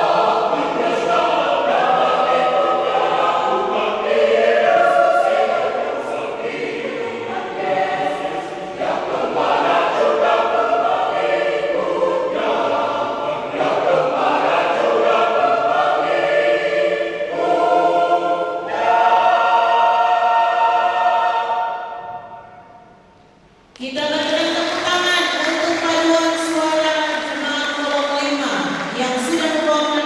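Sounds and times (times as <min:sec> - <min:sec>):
choir singing in harmony: 0:00.0 - 0:23.0.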